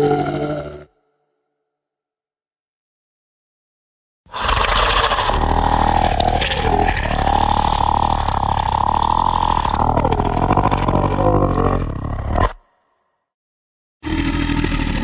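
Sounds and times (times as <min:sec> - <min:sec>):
monster growling roar: 0:00.0 - 0:00.9, 0:04.3 - 0:12.7, 0:14.0 - 0:15.0.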